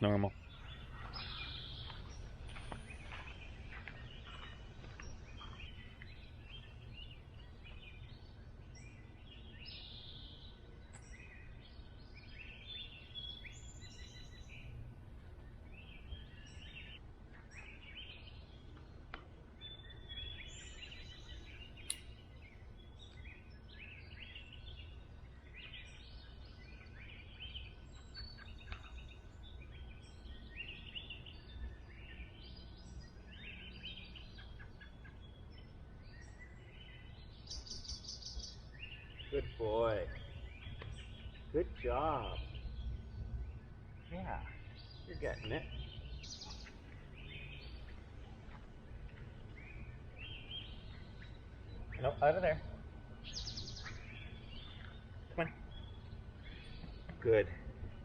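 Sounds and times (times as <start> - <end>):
low outdoor rumble: 0.0 - 58.0
songbirds singing and calling: 0.0 - 58.0.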